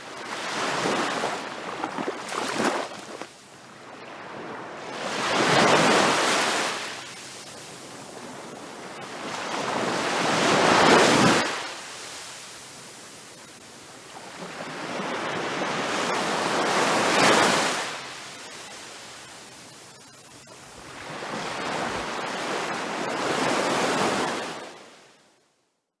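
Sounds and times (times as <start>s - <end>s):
large ocean waves crashing: 4.4s - 7.2s, 14.3s - 18.4s.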